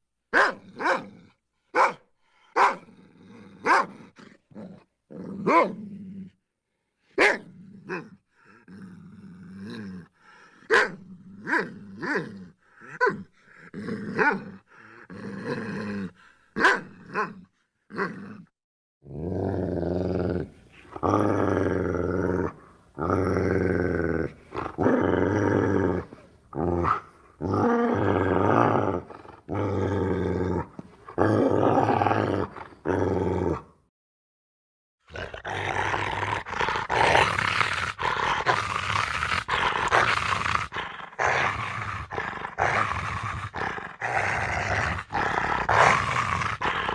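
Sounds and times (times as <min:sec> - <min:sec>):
dog barking: 0:00.3 - 0:01.1, 0:01.7 - 0:02.9, 0:03.6 - 0:04.0, 0:05.4 - 0:05.8, 0:07.2 - 0:08.0, 0:10.7 - 0:11.7, 0:14.2 - 0:14.5, 0:16.6 - 0:17.4
drawn-out growls: 0:19.1 - 0:33.7, 0:35.1 - 0:46.9.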